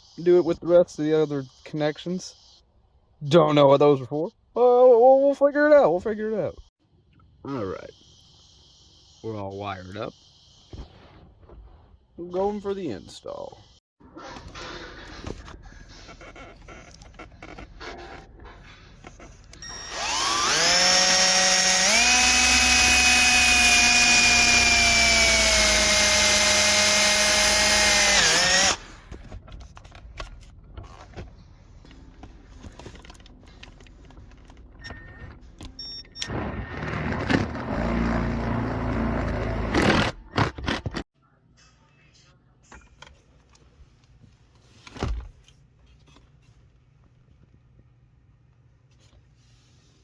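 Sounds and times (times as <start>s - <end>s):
power drill boring: 19.6s - 28.9s.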